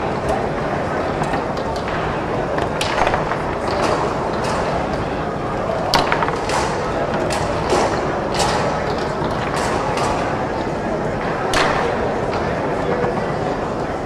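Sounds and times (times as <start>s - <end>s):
murmur of busy hall: 0.0s - 14.0s
foosball ball clacking: 1.3s - 4.9s, 5.9s - 10.4s.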